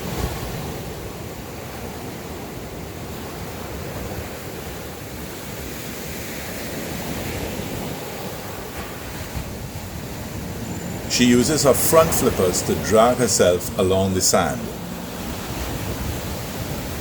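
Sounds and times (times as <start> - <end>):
surf breaking on a beach: 0.0 - 17.0.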